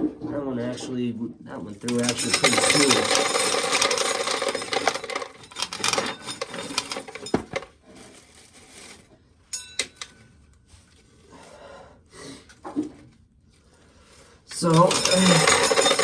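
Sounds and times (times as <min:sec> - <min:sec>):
corn kernels rattling: 0:01.8 - 0:07.7, 0:14.5 - 0:16.0
handling noise: 0:01.8 - 0:07.7, 0:14.6 - 0:16.0.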